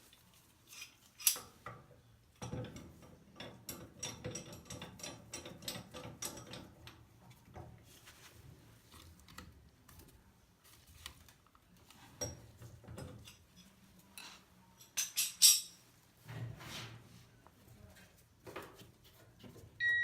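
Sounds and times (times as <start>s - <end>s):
metal tools clinking: 14.8s - 15.8s.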